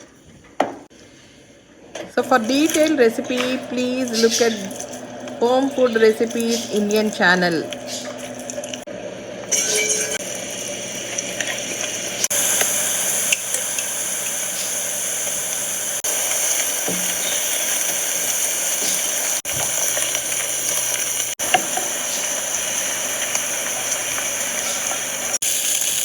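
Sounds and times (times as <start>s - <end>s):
food sizzling in a hot pan: 9.4s - 26.0s.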